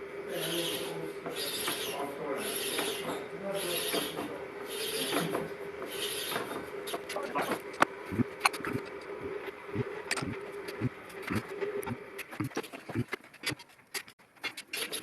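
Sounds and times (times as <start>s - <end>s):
rhythmic swishing: 8.0s - 13.2s.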